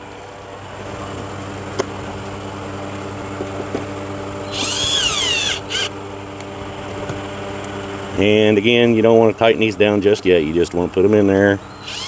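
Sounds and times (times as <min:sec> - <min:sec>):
power drill running: 0:04.4 - 0:05.9, 0:11.6 - 0:12.0.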